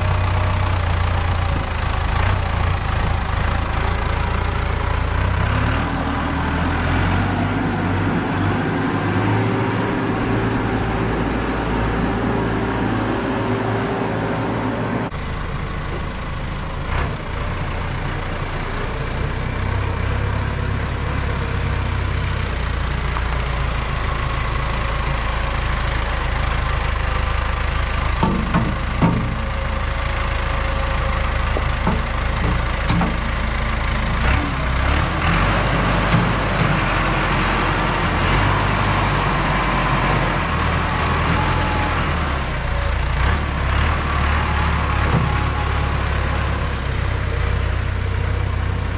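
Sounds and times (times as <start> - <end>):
engine rumbling: 0.0 - 48.9
short knocks and clatters: 28.2 - 29.6, 31.5 - 33.4.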